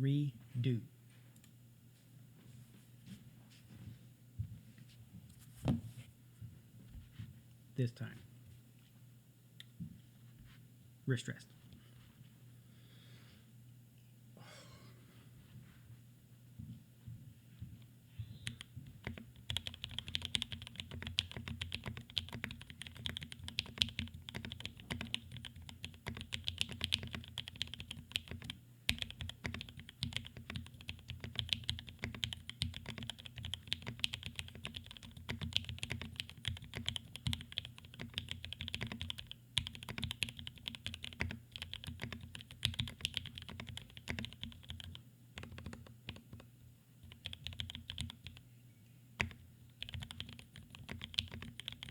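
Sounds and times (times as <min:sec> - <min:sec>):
fast mechanical keyboard typing: 0:18.4 - 0:46.4, 0:47.0 - 0:48.4, 0:49.2 - 0:51.9.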